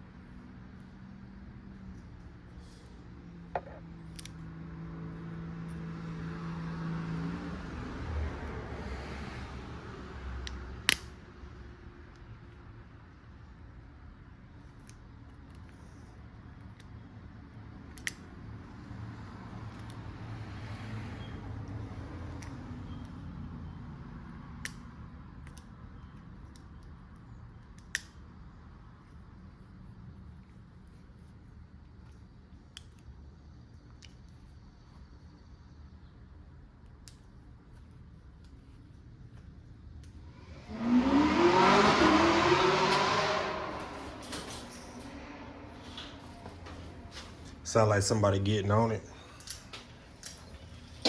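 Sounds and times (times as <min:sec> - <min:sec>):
vehicle passing by: 0:00.0 - 0:10.9, 0:18.5 - 0:24.6, 0:40.1 - 0:50.6.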